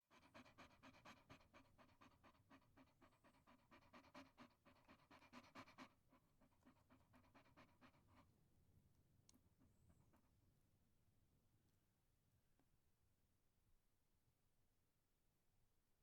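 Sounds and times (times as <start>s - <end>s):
dog panting rapidly: 0.0s - 8.4s.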